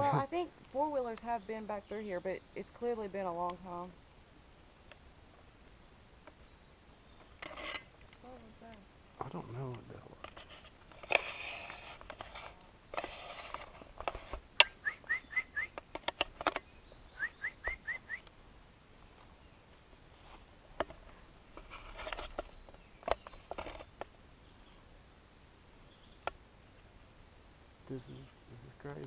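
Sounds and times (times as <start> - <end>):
birds chirping: 0.0 - 26.5, 27.8 - 29.0
high bird twittering: 0.1 - 3.1, 14.6 - 18.9
rustling: 2.6 - 16.8, 17.7 - 24.9.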